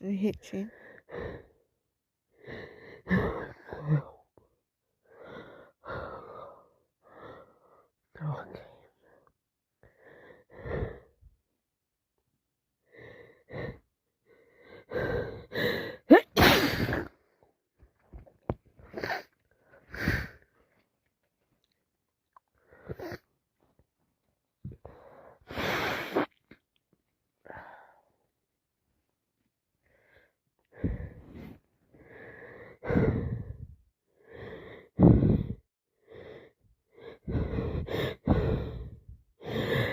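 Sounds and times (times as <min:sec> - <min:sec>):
woman sneezing: 0:16.1 - 0:17.1
woman gasping breaths: 0:29.9 - 0:39.9.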